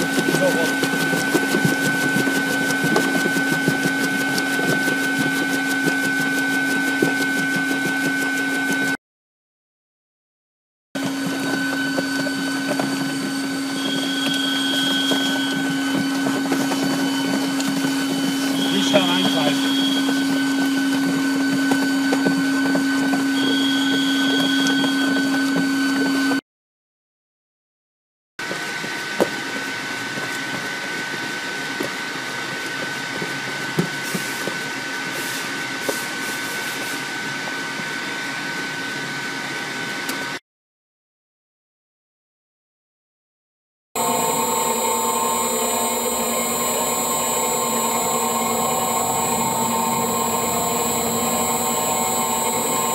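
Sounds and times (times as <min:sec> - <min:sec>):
food cutting machine motor hum: 0:00.0 - 0:09.0, 0:11.0 - 0:26.4, 0:44.0 - 0:52.9.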